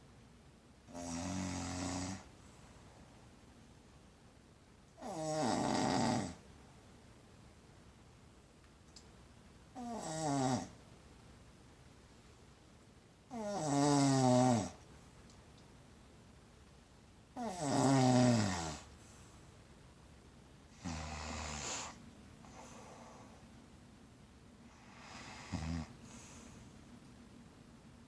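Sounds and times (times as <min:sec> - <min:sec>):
snoring: 0:00.9 - 0:02.3, 0:05.0 - 0:06.4, 0:09.8 - 0:10.8, 0:13.3 - 0:14.8, 0:17.4 - 0:18.9, 0:20.7 - 0:23.4, 0:24.7 - 0:26.3.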